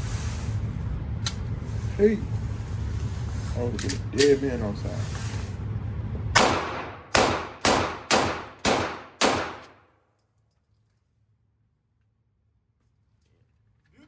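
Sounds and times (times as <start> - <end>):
pistol shots: 6.4 - 9.8.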